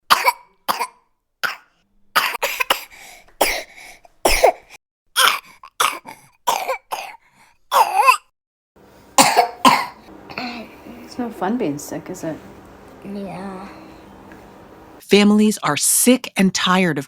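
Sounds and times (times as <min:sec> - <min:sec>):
person coughing: 0:00.1 - 0:08.3, 0:09.2 - 0:10.9.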